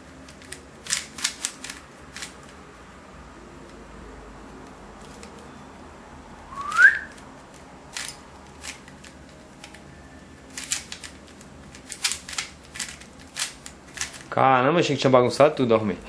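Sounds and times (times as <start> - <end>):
puzzle cube layers clicking: 0.3 - 2.5
short rising whistle: 6.5 - 7.2.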